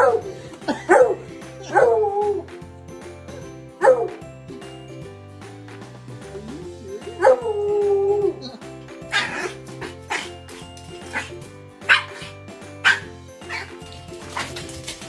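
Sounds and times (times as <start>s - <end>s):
dog barking: 0.0s - 2.4s, 3.8s - 4.2s, 7.0s - 7.5s, 9.1s - 10.4s, 11.0s - 13.7s
light background music: 0.0s - 15.0s
dog whining howl: 1.6s - 2.5s, 6.9s - 8.6s.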